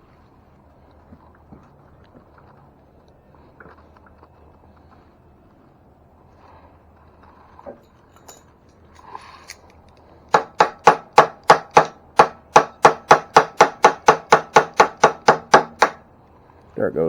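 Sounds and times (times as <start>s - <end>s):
quick sharp knocks: 10.4s - 16.0s.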